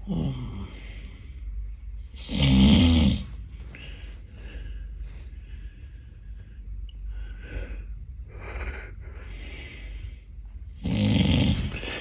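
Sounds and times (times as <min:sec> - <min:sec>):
person snoring: 0:02.2 - 0:03.4, 0:10.8 - 0:12.0.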